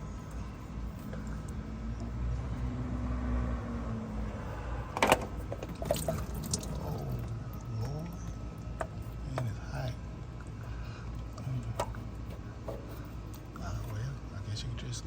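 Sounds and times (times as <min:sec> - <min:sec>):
oil trickling into pan: 0:05.5 - 0:07.4.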